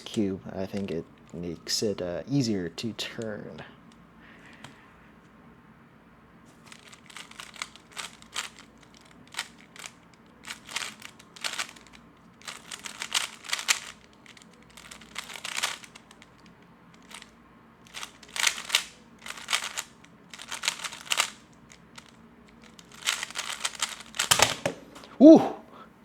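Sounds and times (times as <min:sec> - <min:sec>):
speed cube clacking: 0:06.5 - 0:25.1.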